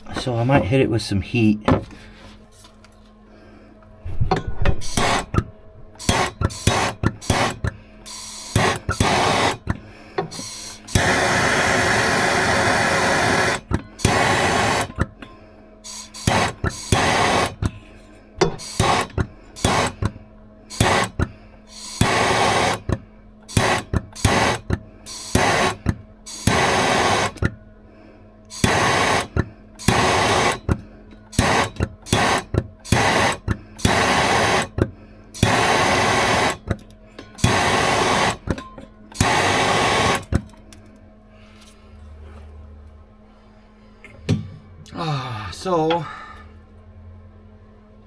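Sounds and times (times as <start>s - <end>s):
steady low hum: 0.0s - 48.0s
short hissing bursts: 6.0s - 9.6s, 10.3s - 14.9s, 15.9s - 17.6s, 18.6s - 20.0s, 20.7s - 22.8s.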